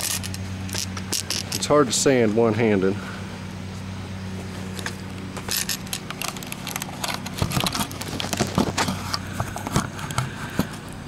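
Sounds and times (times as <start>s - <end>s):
camera and tripod clattering: 0.0s - 1.7s, 4.7s - 10.8s
steady low hum: 0.0s - 11.0s.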